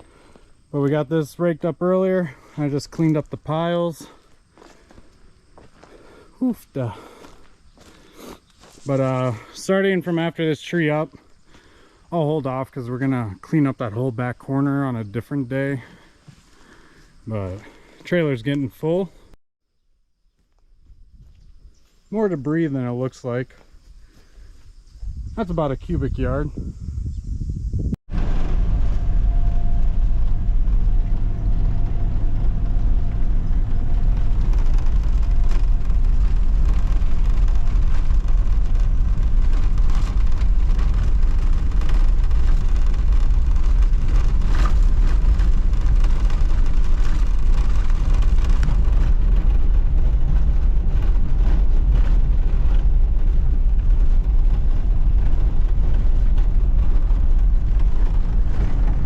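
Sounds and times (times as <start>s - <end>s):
vehicle road and engine noise: 28.1s - 59.0s.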